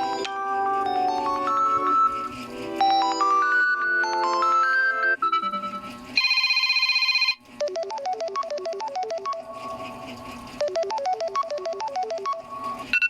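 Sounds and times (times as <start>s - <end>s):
synthesized melodic ringtone: 0.0s - 9.8s, 10.6s - 12.9s
fast electronic trilling ring: 5.2s - 9.9s.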